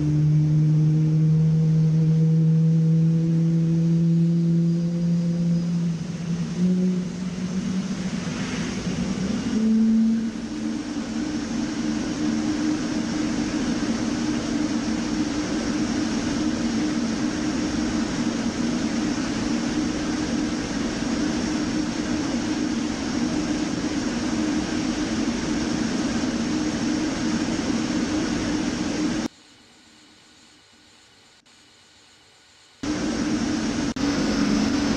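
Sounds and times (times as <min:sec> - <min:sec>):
jet engine running: 0:00.0 - 0:29.3, 0:32.8 - 0:34.9
faint hiss: 0:00.0 - 0:34.9.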